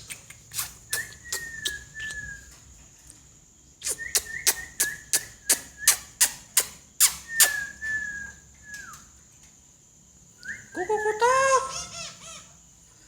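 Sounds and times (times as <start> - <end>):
whistle: 0.5 - 2.6, 3.8 - 9.2, 10.4 - 10.8.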